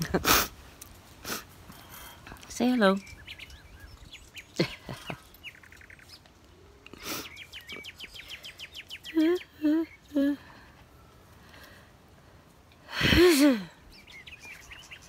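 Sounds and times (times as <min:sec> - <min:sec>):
pet bird chirping: 0:02.7 - 0:06.3, 0:07.2 - 0:10.2.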